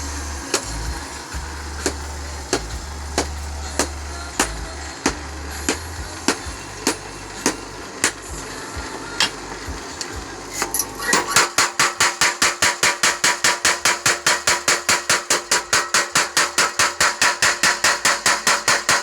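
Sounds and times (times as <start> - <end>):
low motor hum: 0.0 - 11.7
power hammer striking: 0.0 - 19.0.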